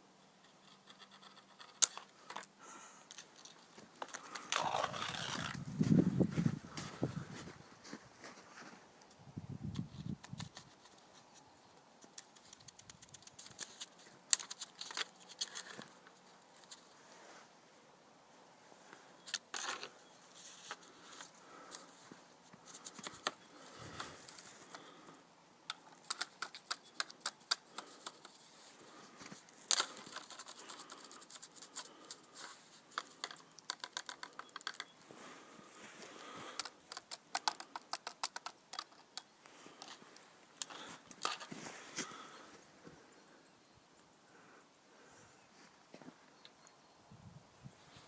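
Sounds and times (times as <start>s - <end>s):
snow crunching: 40.8s - 42.5s.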